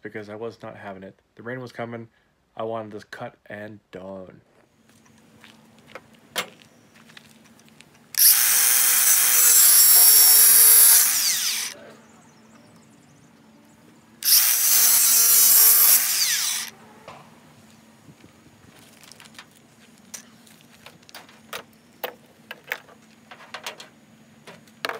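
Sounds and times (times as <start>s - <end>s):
power tool cutting metal: 8.2s - 11.8s, 14.2s - 16.8s.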